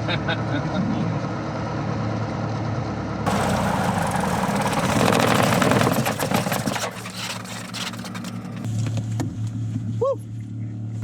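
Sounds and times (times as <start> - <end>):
propeller plane engine humming: 3.3 - 8.8.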